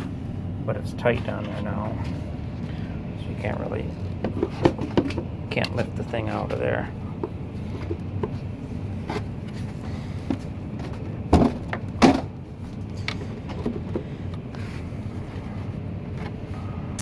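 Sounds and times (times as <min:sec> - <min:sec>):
steady low hum: 0:00.0 - 0:17.0
plastic parts knocking and clunking: 0:04.2 - 0:05.8, 0:10.2 - 0:12.3, 0:13.0 - 0:14.0.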